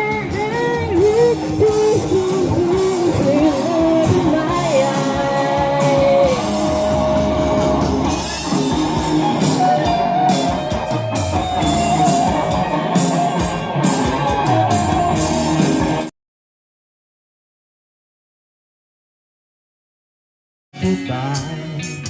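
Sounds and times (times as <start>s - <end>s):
person singing: 0.0s - 8.5s, 20.8s - 22.0s
live rock band: 0.0s - 16.1s, 20.8s - 22.0s.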